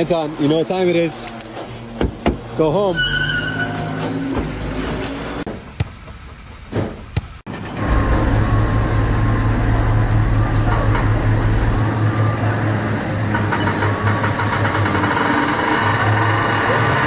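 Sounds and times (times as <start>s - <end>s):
engine running with low hum: 5.7s - 17.0s.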